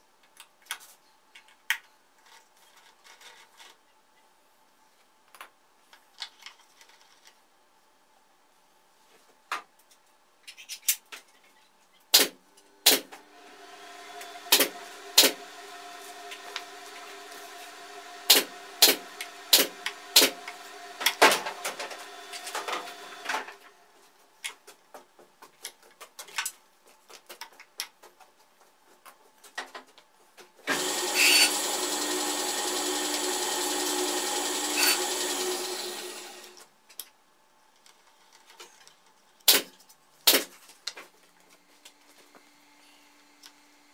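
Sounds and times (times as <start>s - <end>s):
motor hum: 12.6s - 23.8s, 30.7s - 36.6s
planer electric motor running: 13.2s - 23.7s, 30.7s - 36.6s.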